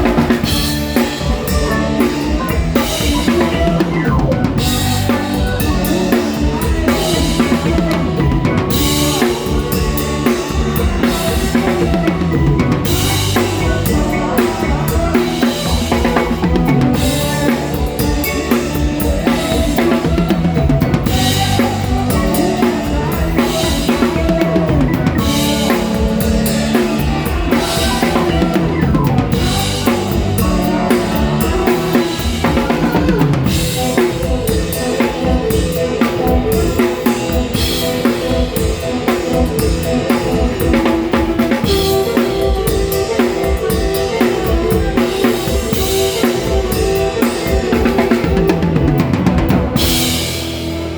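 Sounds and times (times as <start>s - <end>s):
drum kit beat: 0.0s - 50.9s
live folk-rock band: 0.0s - 50.9s.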